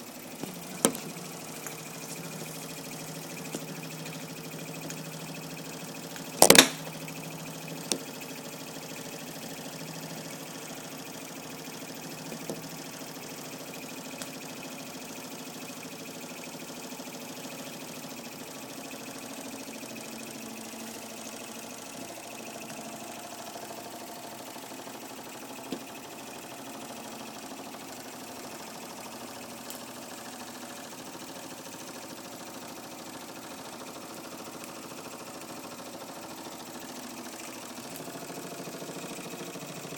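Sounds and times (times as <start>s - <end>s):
toy steam engine hum: 0.0s - 39.9s
loud sharp click: 6.4s - 6.9s.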